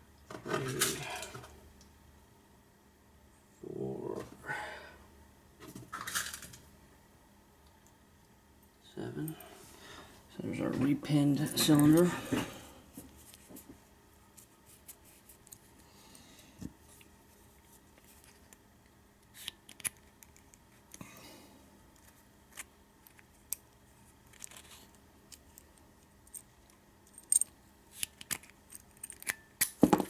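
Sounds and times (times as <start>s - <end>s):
small metallic clicks: 25.3s - 29.8s.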